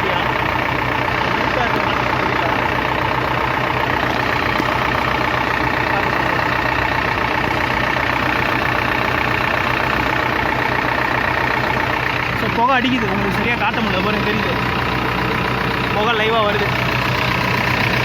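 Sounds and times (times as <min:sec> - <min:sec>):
diesel engine idling: 0:00.0 - 0:18.0.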